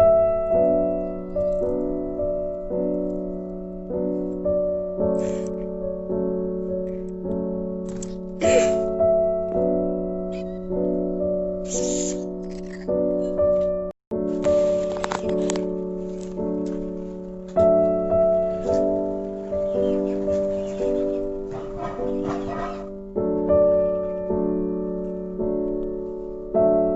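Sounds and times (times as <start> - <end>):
slow piano music: 0.0 - 26.9
short hissy noises: 11.7 - 12.3.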